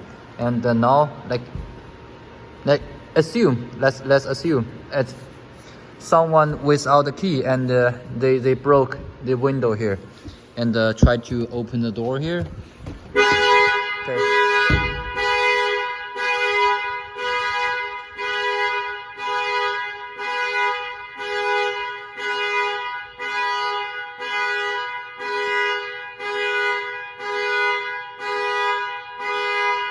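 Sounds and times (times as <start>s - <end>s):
car horn blaring in pulses: 13.1s - 29.9s
low thud: 14.7s - 15.2s.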